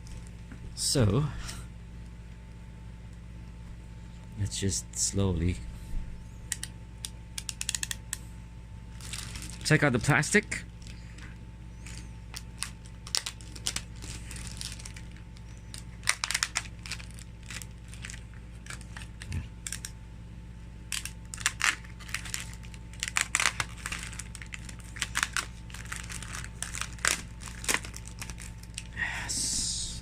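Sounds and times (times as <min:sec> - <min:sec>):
steady low hum: 0:00.0 - 0:30.0
plastic packaging crinkling: 0:08.9 - 0:19.9, 0:20.9 - 0:29.0.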